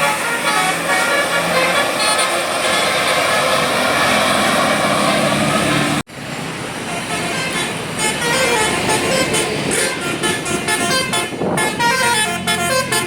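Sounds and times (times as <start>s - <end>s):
musical air horn playing a tune: 0.0s - 3.8s, 6.9s - 13.0s
bus engine and road noise: 0.0s - 13.0s.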